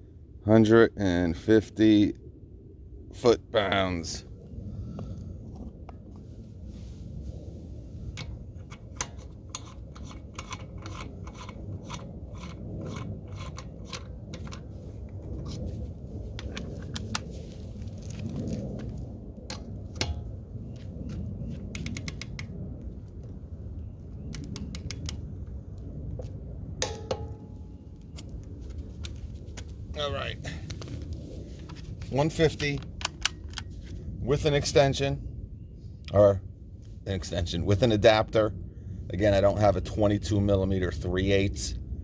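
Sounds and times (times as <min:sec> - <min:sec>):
steady low rumble: 0:00.0 - 0:42.0
metallic clicks of hand tools: 0:21.8 - 0:22.5.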